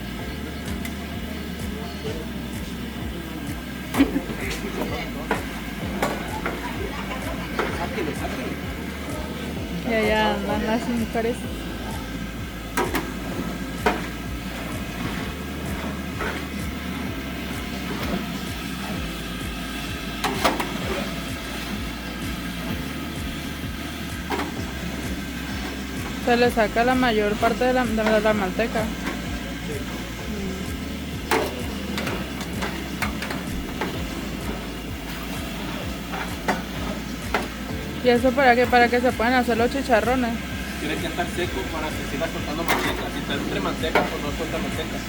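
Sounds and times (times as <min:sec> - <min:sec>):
meat sizzling and bubbling in fat: 0:00.0 - 0:45.0
steady low rumble: 0:00.0 - 0:45.0
sharp pops and knocks of frying: 0:12.5 - 0:27.2, 0:27.9 - 0:38.0, 0:40.6 - 0:44.8.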